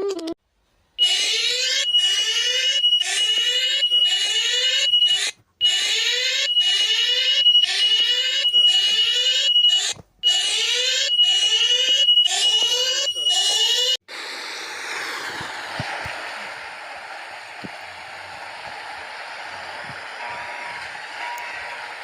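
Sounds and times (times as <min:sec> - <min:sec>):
rising electronic alarm sweeps: 0:01.0 - 0:14.0
steady high-pitched tone: 0:14.5 - 0:22.0.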